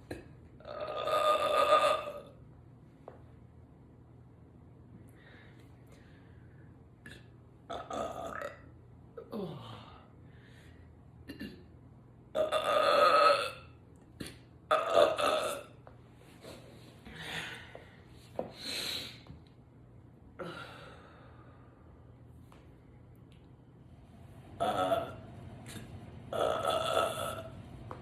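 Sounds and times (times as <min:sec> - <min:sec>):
woman burping: 0:00.1 - 0:02.3, 0:07.1 - 0:09.6, 0:12.4 - 0:13.7, 0:14.7 - 0:15.7, 0:24.6 - 0:25.2, 0:26.3 - 0:27.5
breaths: 0:05.1 - 0:06.8, 0:09.4 - 0:11.0, 0:16.4 - 0:19.4, 0:20.4 - 0:22.0.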